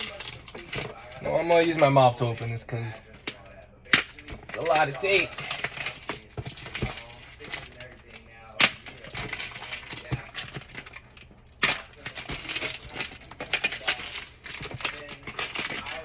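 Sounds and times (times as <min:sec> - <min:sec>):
packing tape ripping off cardboard: 0:03.9 - 0:11.0, 0:11.6 - 0:16.0.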